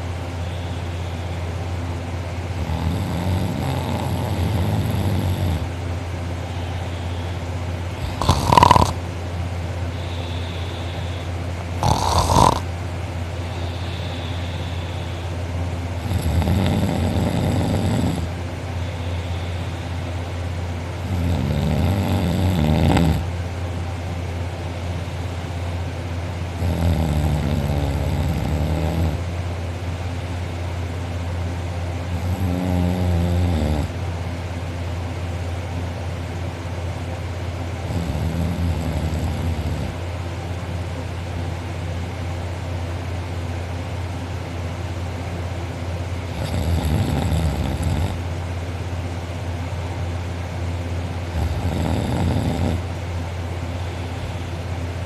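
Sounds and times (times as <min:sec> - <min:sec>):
steady low hum: 0:00.0 - 0:55.0
man snoring loudly: 0:02.6 - 0:05.7, 0:08.0 - 0:09.0, 0:10.0 - 0:12.7, 0:16.0 - 0:19.8, 0:21.0 - 0:23.3, 0:26.6 - 0:29.3, 0:32.1 - 0:34.0, 0:37.8 - 0:40.0, 0:46.3 - 0:48.2, 0:51.3 - 0:52.9.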